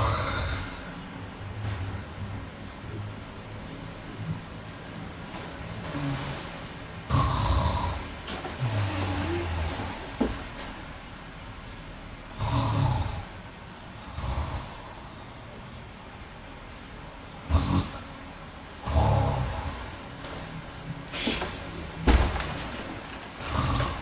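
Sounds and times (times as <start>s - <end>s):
man snoring: 0.0s - 1.8s, 5.2s - 11.1s, 12.3s - 15.3s, 17.2s - 18.1s, 18.8s - 24.0s.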